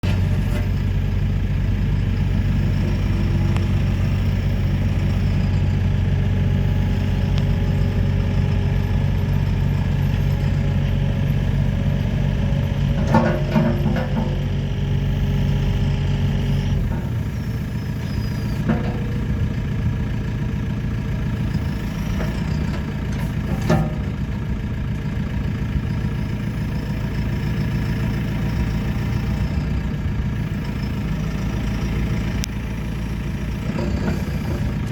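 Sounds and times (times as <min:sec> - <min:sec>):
diesel engine running: 0:00.0 - 0:34.9.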